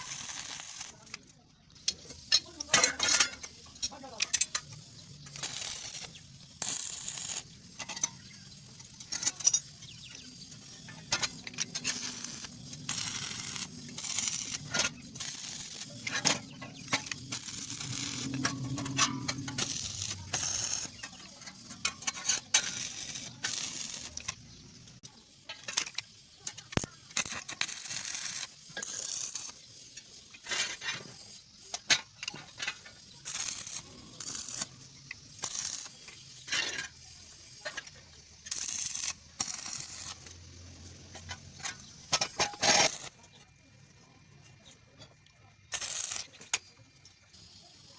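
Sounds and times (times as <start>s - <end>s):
metal pieces clinking: 2.0s - 24.5s.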